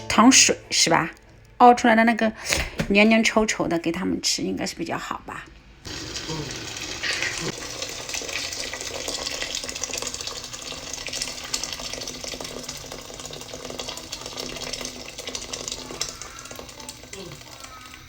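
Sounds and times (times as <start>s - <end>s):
water running from a tap: 5.9s - 18.0s.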